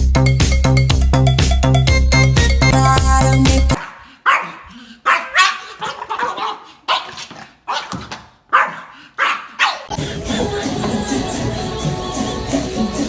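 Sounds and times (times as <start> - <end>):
dog barking: 3.8 - 9.9.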